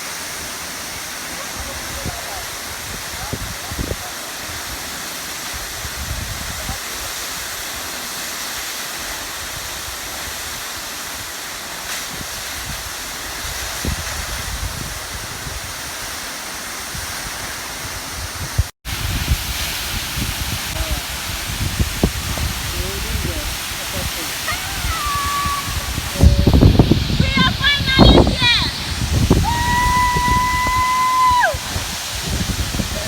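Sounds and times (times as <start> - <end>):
waterfall rushing: 0.0 - 13.9, 15.0 - 33.0.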